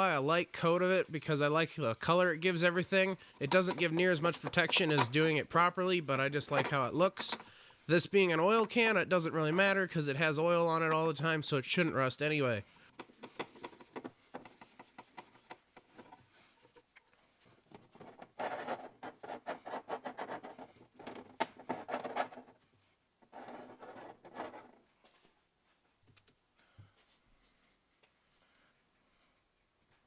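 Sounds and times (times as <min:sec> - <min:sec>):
scratchy rubbing on metal parts: 0:03.0 - 0:05.4, 0:06.4 - 0:07.5, 0:13.0 - 0:16.9, 0:17.7 - 0:22.6, 0:23.2 - 0:24.9.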